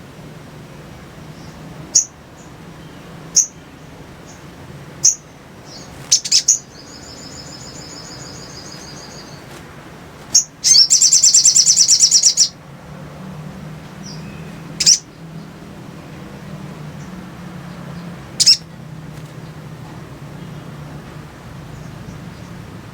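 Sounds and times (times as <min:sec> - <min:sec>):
sunbird chirping and trilling: 0:01.2 - 0:09.6, 0:10.3 - 0:12.6, 0:13.8 - 0:19.6.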